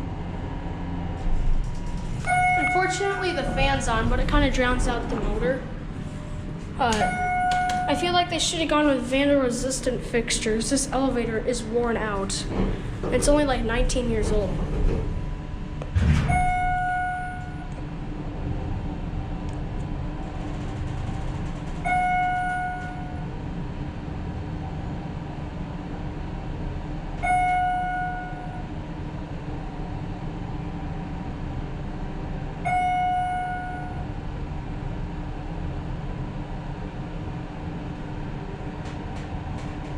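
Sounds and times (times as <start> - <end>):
cab fan whirring: 0.0 - 16.2
single-tone electronic chime: 2.3 - 3.1, 7.0 - 7.9.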